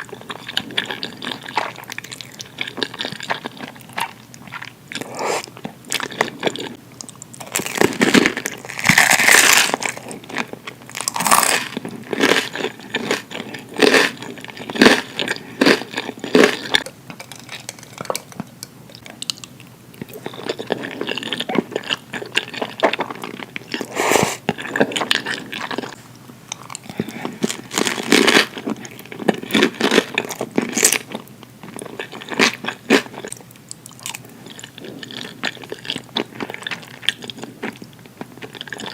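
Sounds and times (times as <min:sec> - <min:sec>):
wet chewing: 0:11.0 - 0:38.9.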